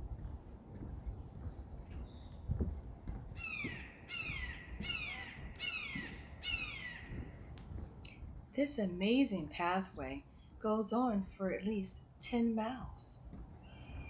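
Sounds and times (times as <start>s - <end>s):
footsteps on a path: 0.0s - 11.4s, 13.1s - 14.0s
bird calling: 3.4s - 7.5s.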